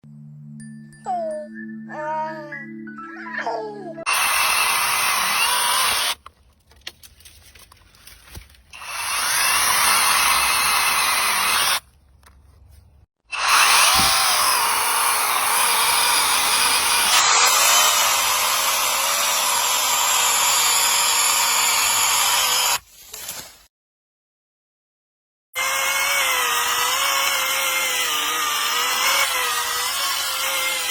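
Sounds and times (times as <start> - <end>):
chainsaw cutting wood: 4.1 - 6.2, 8.7 - 11.8, 13.3 - 22.8, 25.6 - 30.9.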